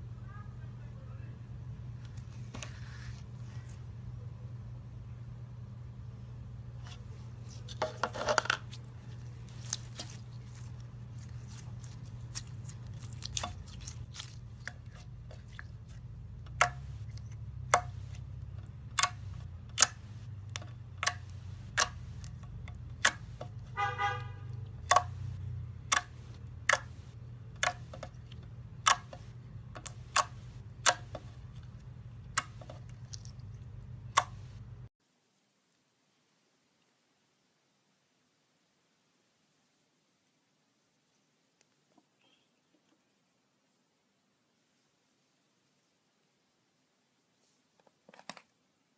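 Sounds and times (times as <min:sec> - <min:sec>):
steady low hum: 0:00.0 - 0:34.9.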